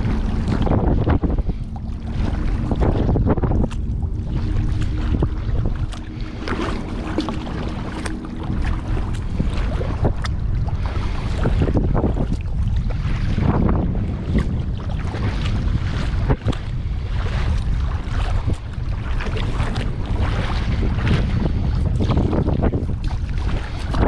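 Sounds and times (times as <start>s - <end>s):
paddle splashing water: 0.0s - 24.0s
wind buffeting microphone: 0.0s - 24.0s.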